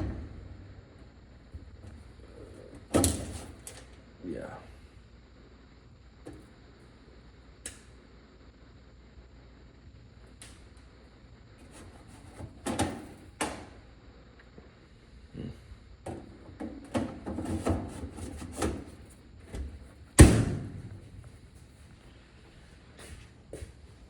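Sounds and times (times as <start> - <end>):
heavy bang: 0.0 - 0.8
knocks and clunks of dryer panels: 0.0 - 0.8, 2.7 - 3.7, 12.3 - 13.7, 16.1 - 21.1.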